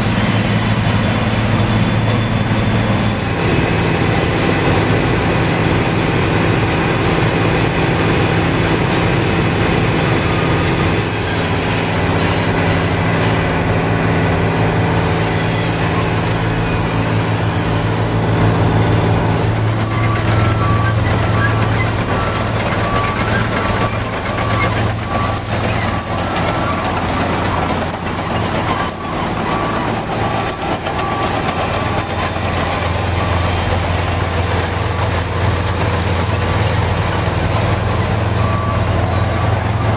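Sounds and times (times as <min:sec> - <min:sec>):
heavy diesel machinery running: 0:00.0 - 0:39.9
reversing alarm beeping: 0:19.4 - 0:39.9.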